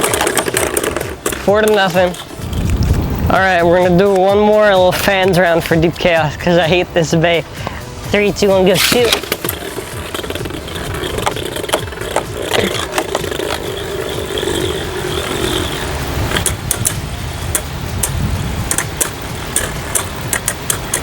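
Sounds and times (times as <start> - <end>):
spinning tops whirring: 0.0 - 5.8, 8.1 - 21.0
spinning tops clicking as they collide: 8.7 - 21.0.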